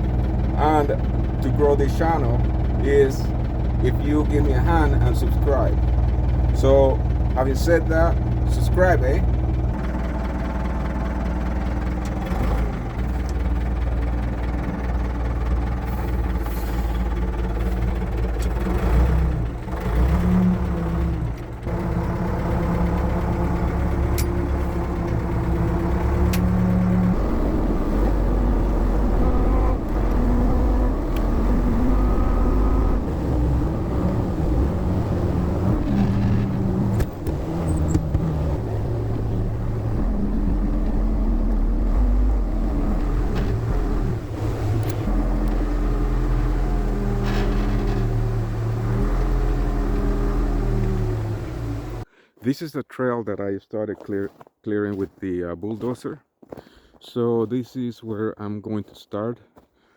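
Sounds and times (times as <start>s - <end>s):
diesel engine running: 0.0s - 52.1s.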